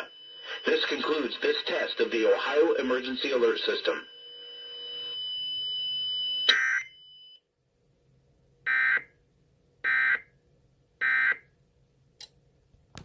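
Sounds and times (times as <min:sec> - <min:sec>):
steady high whine: 0:00.0 - 0:07.0.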